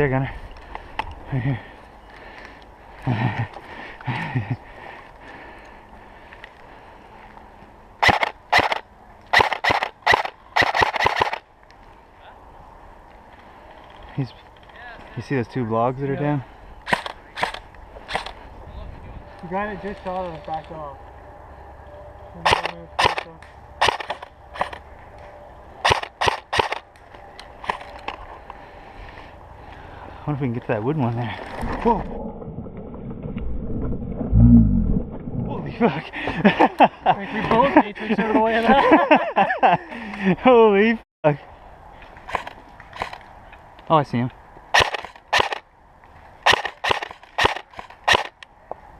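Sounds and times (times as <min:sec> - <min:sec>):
airsoft guns firing bursts: 0:08.0 - 0:11.4
airsoft rifle shots: 0:08.0 - 0:11.4, 0:16.9 - 0:18.4, 0:22.4 - 0:24.8, 0:25.8 - 0:26.8, 0:44.7 - 0:45.6, 0:46.4 - 0:48.4.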